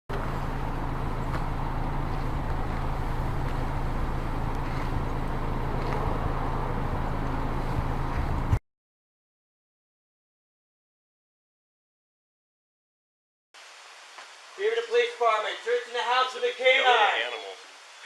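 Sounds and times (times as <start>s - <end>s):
road traffic rumble: 0.1s - 8.6s.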